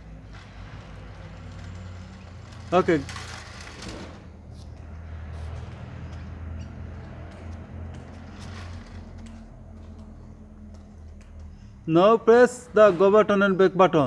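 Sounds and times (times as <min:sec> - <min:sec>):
toy car electric motor hum: 0:00.0 - 0:10.6.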